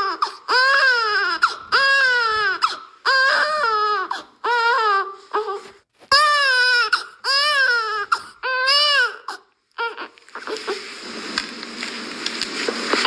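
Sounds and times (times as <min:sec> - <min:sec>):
baby crying: 0:00.0 - 0:10.7
hissy crackling noise: 0:10.1 - 0:13.0.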